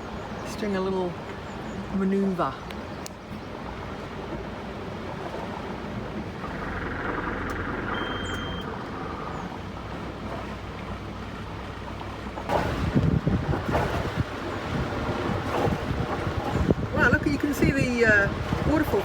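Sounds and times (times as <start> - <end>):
boat engine running at low speed: 0.0 - 19.0
high beep: 7.9 - 8.7.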